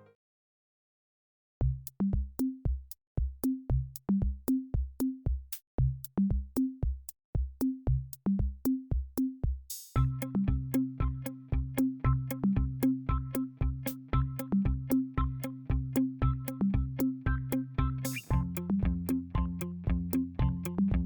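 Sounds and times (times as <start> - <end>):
music with bass line: 1.6 - 7.0, 7.6 - 9.3, 10.0 - 21.0
electronic drum machine beat: 10.0 - 21.0.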